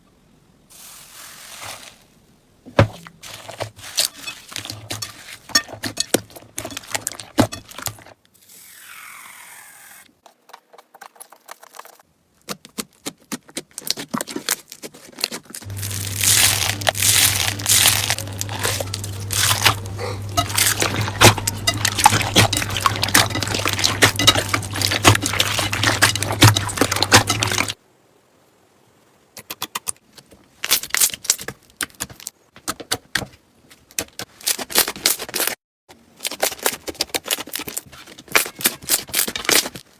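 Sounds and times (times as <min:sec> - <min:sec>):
slime crackling and popping: 0:15.6 - 0:27.8
low steady hum: 0:15.7 - 0:27.8.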